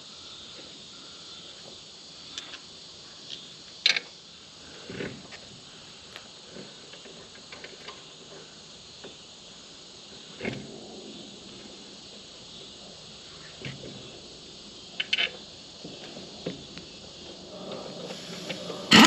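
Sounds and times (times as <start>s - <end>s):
insects chirring: 0.0s - 19.0s.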